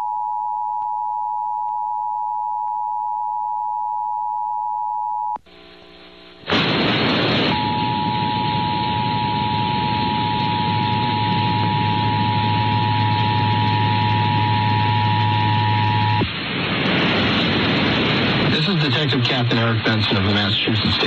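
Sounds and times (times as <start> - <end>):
low hum: 0.0 - 20.6
radio static hiss: 5.4 - 21.0
two-tone alert signal: 7.5 - 16.2.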